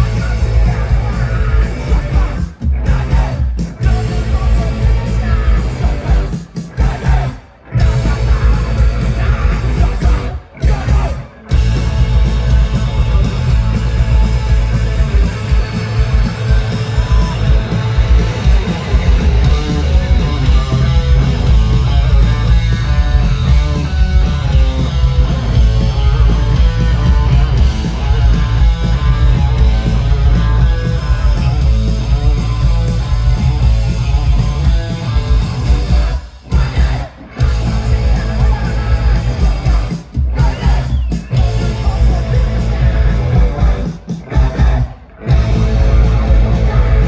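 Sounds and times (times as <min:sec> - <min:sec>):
punk rock band playing live: 0:00.0 - 0:47.0
person singing: 0:35.7 - 0:47.0.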